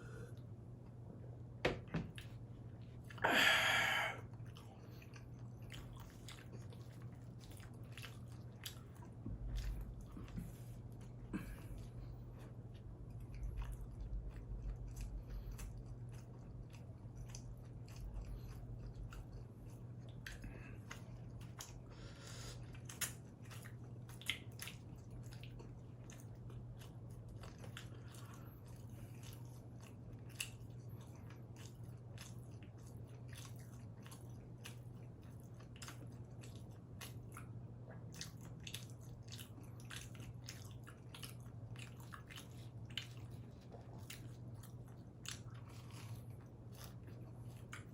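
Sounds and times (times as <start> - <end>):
biting and chewing pizza: 4.2 - 47.9.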